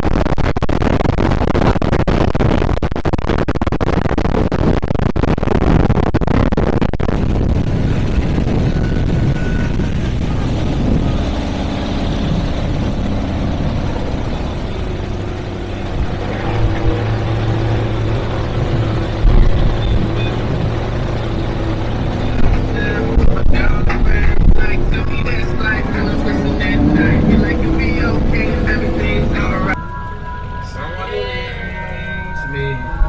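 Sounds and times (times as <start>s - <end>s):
wind buffeting microphone: 3.9s - 29.8s
speedboat engines running: 7.1s - 29.8s.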